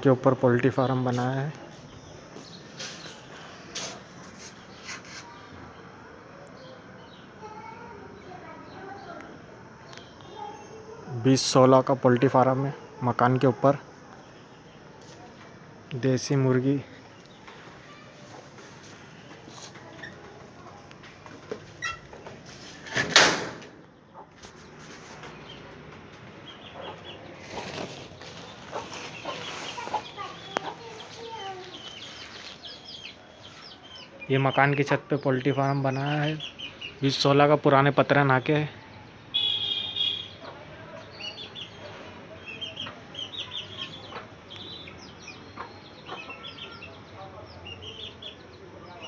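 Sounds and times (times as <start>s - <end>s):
chickens clucking: 24.1s - 37.4s, 40.4s - 48.3s.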